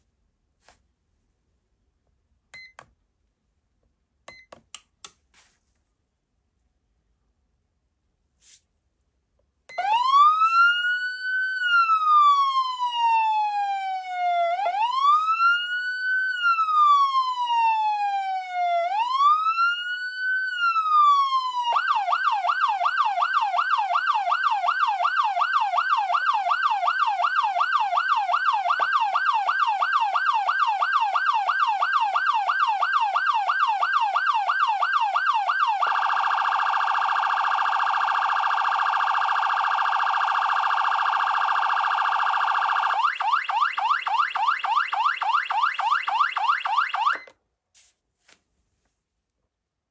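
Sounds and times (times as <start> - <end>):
electronic siren wail yelp and warble: 9.8 - 47.3.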